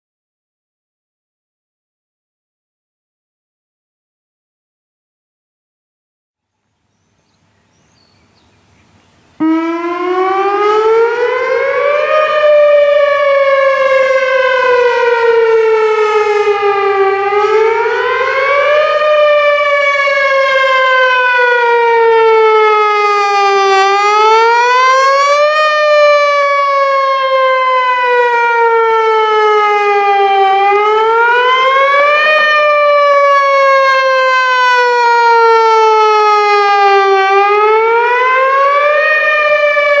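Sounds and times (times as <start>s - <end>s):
tornado warning siren wailing: 9.4s - 40.0s.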